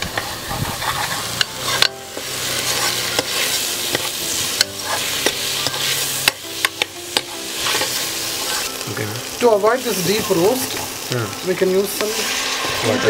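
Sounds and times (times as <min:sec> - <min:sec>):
utensil scraping pan: 0:00.0 - 0:09.0
vegetables sizzling in hot oil: 0:00.0 - 0:13.0.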